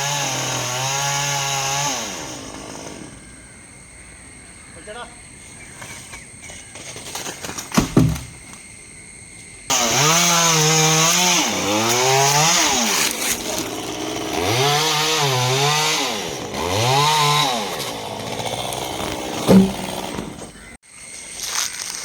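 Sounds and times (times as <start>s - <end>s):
chainsaw cutting wood: 0.0s - 3.3s, 7.8s - 8.4s, 9.7s - 20.7s
short sharp knock: 19.5s - 19.9s.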